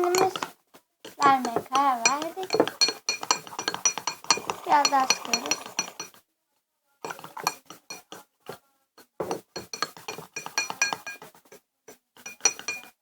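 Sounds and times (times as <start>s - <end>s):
spoon clinking against bowl: 0.0s - 0.5s, 1.1s - 6.2s, 7.1s - 8.2s, 9.2s - 11.3s, 12.2s - 13.0s.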